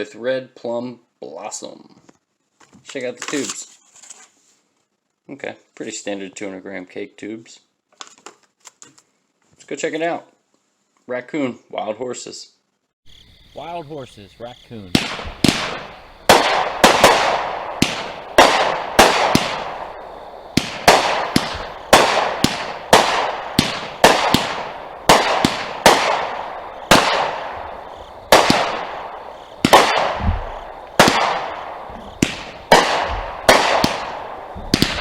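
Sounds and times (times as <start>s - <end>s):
firework cake shots: 14.9s - 35.0s.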